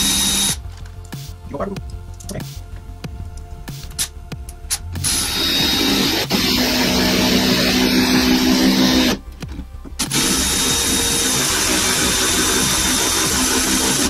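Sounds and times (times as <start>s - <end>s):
power drill motor whine: 0.0s - 0.6s, 5.0s - 9.2s, 10.0s - 14.0s.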